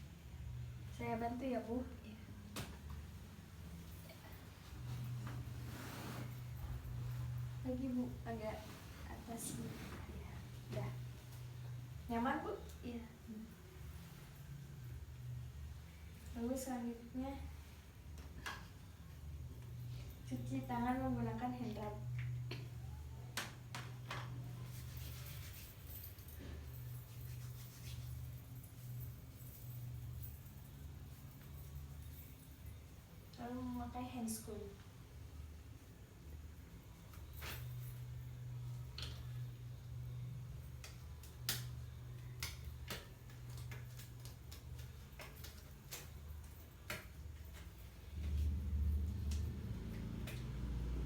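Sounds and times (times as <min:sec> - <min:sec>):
steady low hum: 0:00.0 - 0:51.0
hands rubbing together: 0:27.0 - 0:28.3
examination gloves snapping: 0:40.8 - 0:46.2.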